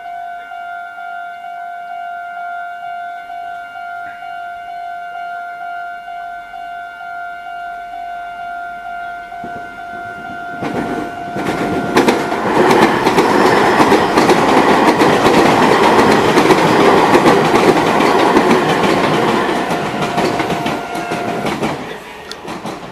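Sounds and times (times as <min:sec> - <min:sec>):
level crossing warning bell: 0:00.0 - 0:22.4
train wheels clattering over rails: 0:09.4 - 0:22.9.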